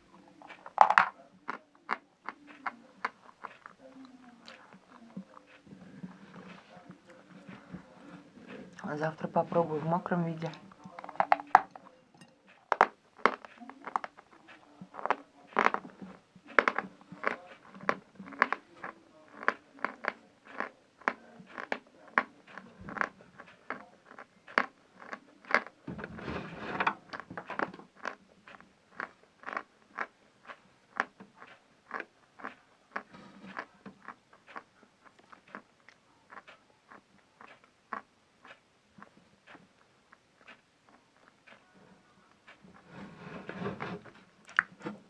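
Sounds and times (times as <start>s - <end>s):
chewing crunchy chalk: 0.4s - 7.6s, 12.8s - 25.8s, 26.5s - 41.6s.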